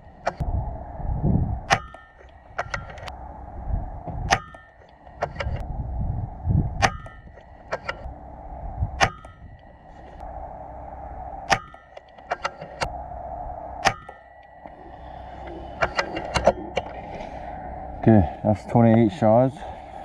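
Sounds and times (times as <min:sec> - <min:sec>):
ringing tone: 0:01.6 - 0:05.6, 0:06.8 - 0:18.1
air rifle shots: 0:01.7 - 0:03.1.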